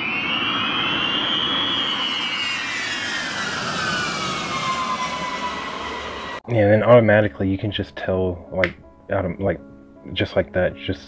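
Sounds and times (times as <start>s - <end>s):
jet aircraft flying past: 0.0s - 6.4s.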